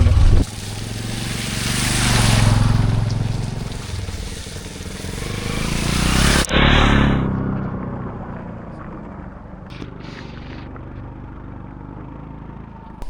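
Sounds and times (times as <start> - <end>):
rushing noise: 0.0 - 7.4
motorcycle engine running: 0.0 - 13.0.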